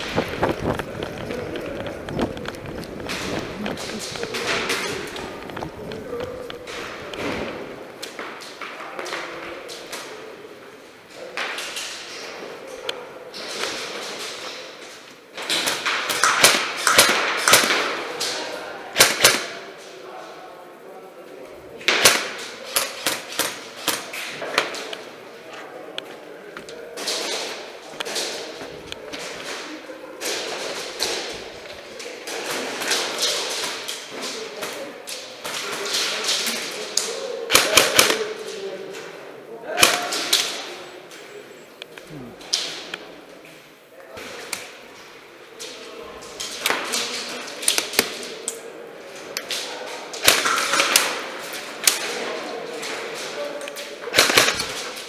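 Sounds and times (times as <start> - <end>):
airsoft gun shots: 54.1 - 54.8.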